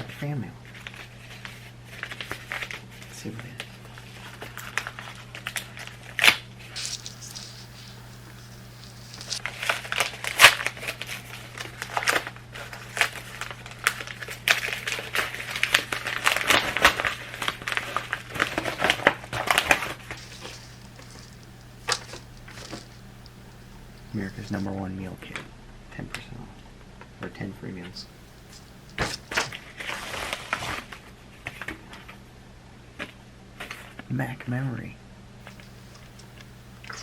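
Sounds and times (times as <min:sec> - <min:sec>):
packaging crinkling and tearing: 0:06.8 - 0:09.4, 0:20.2 - 0:24.7, 0:28.0 - 0:29.6, 0:35.5 - 0:37.0.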